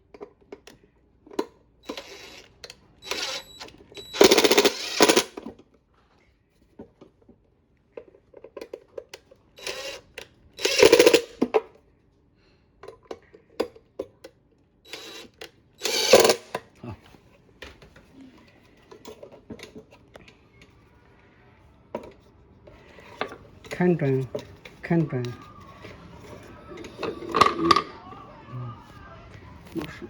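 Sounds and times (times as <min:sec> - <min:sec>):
power screwdriver running: 0:01.8 - 0:05.4, 0:09.6 - 0:11.4, 0:14.9 - 0:16.6.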